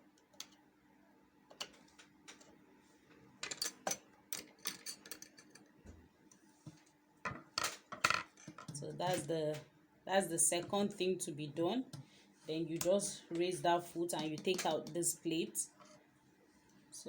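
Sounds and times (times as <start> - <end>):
metal parts clicking and tapping: 3.4 - 5.7.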